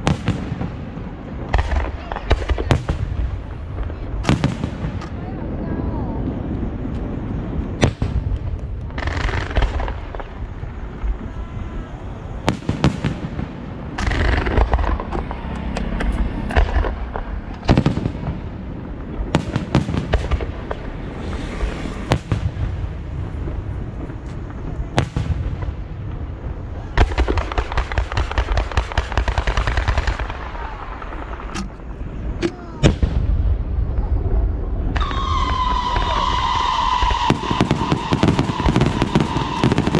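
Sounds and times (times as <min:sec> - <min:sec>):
sharp firework bangs: 0:00.0 - 0:05.3, 0:12.4 - 0:23.2, 0:24.5 - 0:25.9, 0:26.9 - 0:31.8, 0:34.9 - 0:39.9
rumble of firework bursts: 0:00.0 - 0:39.9
rapid firework crackling: 0:06.7 - 0:11.2, 0:12.0 - 0:34.0, 0:34.9 - 0:39.9.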